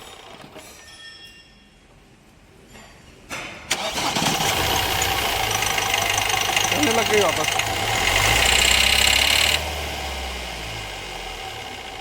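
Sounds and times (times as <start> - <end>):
diesel engine cranking and idling: 3.7 - 12.0.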